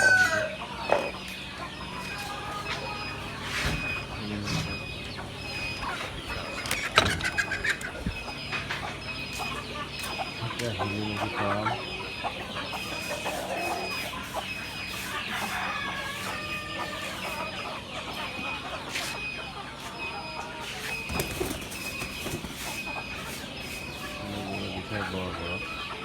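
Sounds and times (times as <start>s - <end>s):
rooster crowing: 0.0s - 1.1s, 12.8s - 18.4s
chickens clucking: 0.0s - 26.0s.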